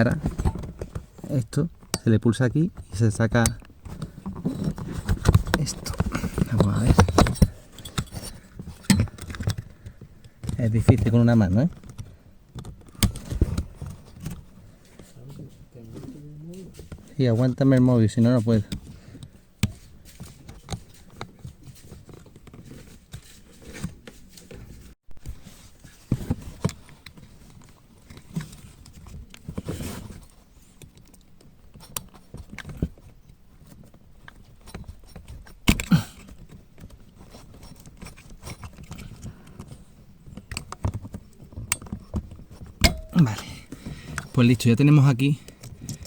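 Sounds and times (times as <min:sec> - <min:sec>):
plastic and wiring clicks and rattles: 0:02.8 - 0:15.1, 0:26.1 - 0:46.0.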